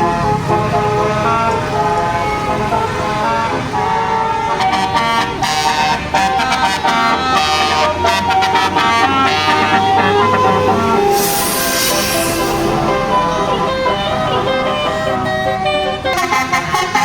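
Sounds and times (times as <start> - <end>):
multi-trumpet bus horn melody: 0.0 - 17.0
short sharp horn blasts: 7.6 - 14.6.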